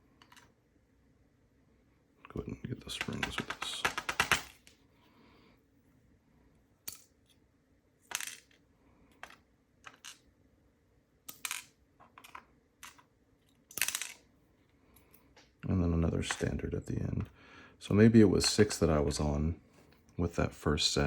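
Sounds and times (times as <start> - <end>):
small metal parts clicking: 11.3 - 14.2.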